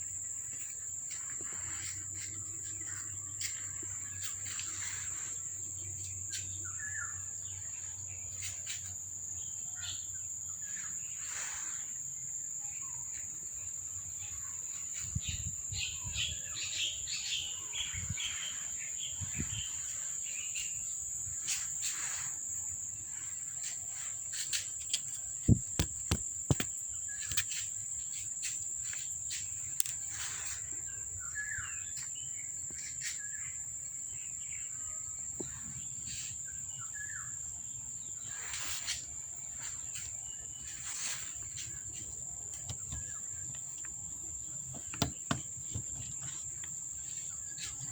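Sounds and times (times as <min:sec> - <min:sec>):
crickets chirring: 0:00.0 - 0:47.9
sharp clicks and taps: 0:25.5 - 0:26.7.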